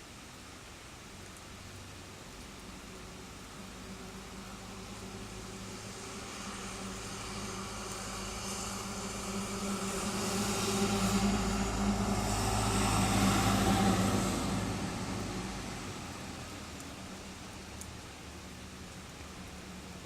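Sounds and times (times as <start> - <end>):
wind and rain hiss: 0.0 - 20.0
vehicle engine passing by: 3.8 - 17.8.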